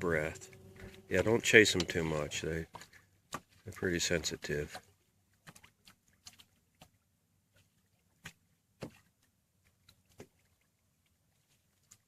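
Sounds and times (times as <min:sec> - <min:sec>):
faint clicks and knocks: 0:00.3 - 0:03.7.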